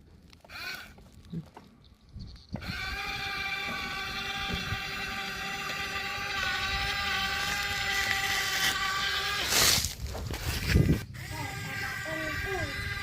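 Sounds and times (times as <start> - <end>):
toy excavator motor whining: 0.4 - 1.3, 2.1 - 13.0.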